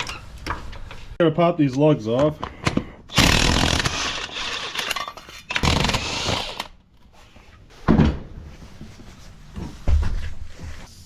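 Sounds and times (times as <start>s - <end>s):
impact wrench running: 3.1s - 6.7s.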